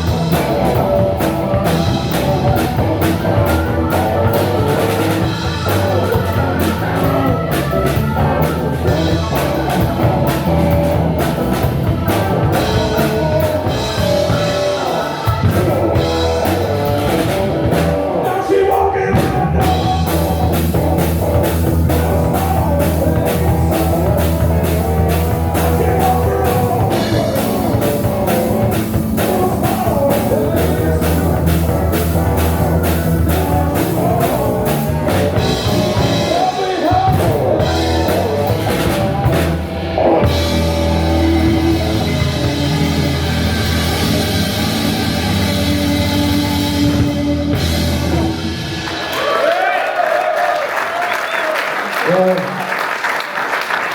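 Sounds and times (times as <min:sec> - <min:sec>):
person singing: 0:00.0 - 0:48.3
blues rock band playing: 0:00.0 - 0:50.4.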